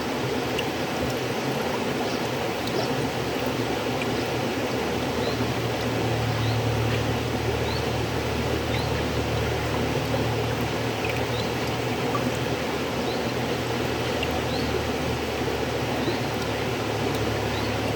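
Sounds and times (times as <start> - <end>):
river water flowing: 0.0 - 17.9.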